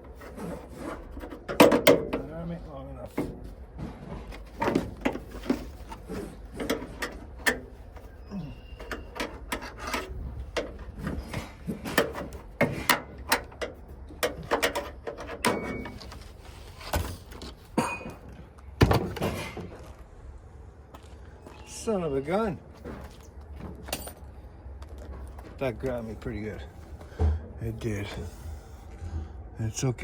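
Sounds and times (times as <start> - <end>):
metal clicks and rattles of door lock: 12.0 - 16.0.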